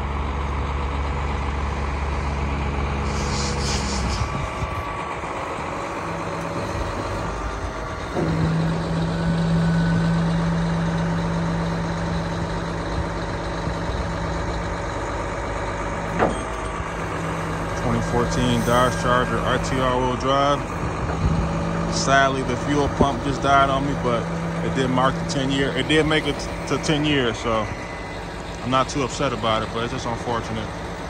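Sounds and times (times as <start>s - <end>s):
vehicle engine running: 0.0s - 31.0s
short hiss: 3.0s - 4.3s.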